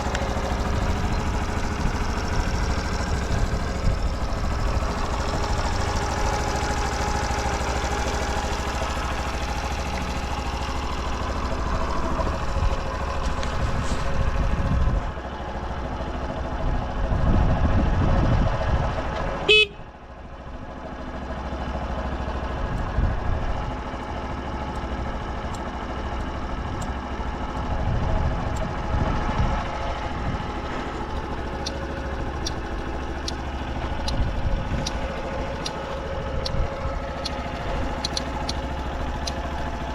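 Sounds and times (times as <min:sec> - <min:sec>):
motorcycle engine running: 0:00.0 - 0:39.9
short horn beep: 0:19.5 - 0:19.9.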